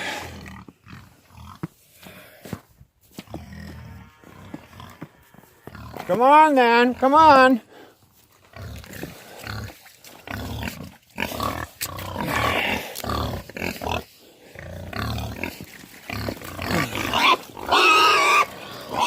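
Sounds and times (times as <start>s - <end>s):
pigs grunting: 0.0s - 2.2s, 3.2s - 6.2s, 6.8s - 19.0s
pigs squealing loudly: 9.4s - 19.0s.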